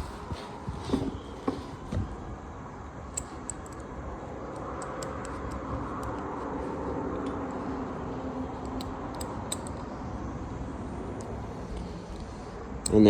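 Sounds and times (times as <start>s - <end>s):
faint steady hum: 0.0s - 13.0s
small metal parts clicking: 3.1s - 6.3s, 8.6s - 10.0s, 11.2s - 13.0s.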